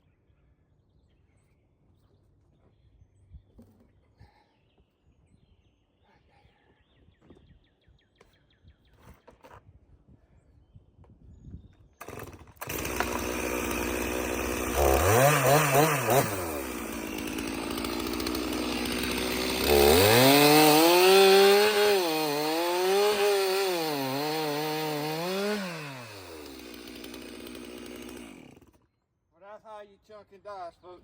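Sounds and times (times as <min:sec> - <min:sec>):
chainsaw cutting wood: 0:12.0 - 0:28.9.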